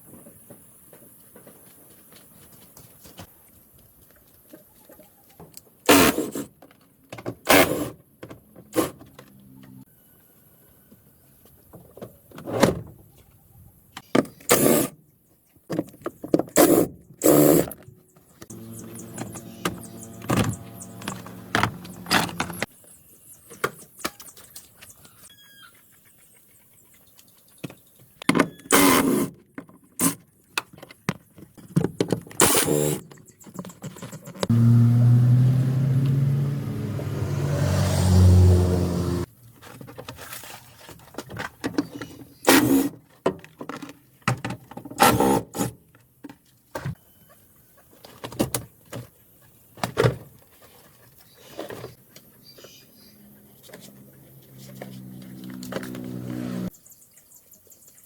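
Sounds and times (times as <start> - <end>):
motor hum: 18.5 - 22.7, 34.5 - 37.5.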